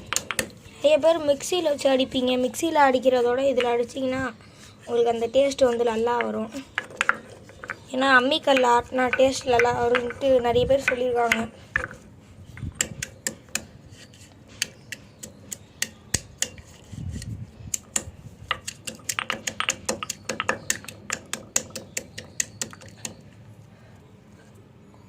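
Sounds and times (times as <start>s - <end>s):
stone pestle knocking in mortar: 0.1s - 0.6s, 8.5s - 12.0s, 17.8s - 23.2s.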